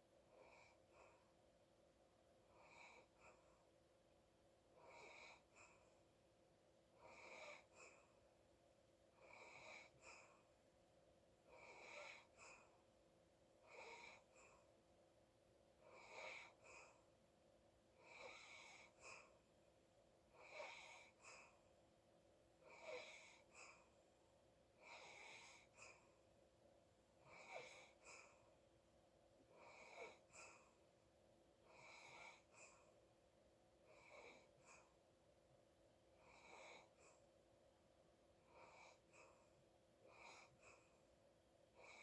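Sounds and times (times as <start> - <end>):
sleeping person rasping breaths: 11.5 - 12.8, 15.9 - 17.1, 18.0 - 19.4, 20.4 - 21.7, 22.6 - 24.0, 24.8 - 26.1, 27.2 - 28.5, 29.5 - 30.8, 31.6 - 33.0, 38.5 - 41.1.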